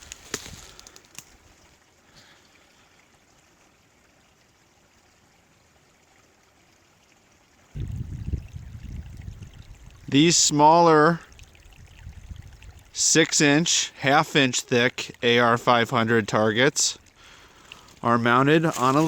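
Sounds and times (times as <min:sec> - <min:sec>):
footsteps: 0:00.0 - 0:01.4, 0:18.7 - 0:19.0
faint outdoor hiss: 0:00.0 - 0:19.0.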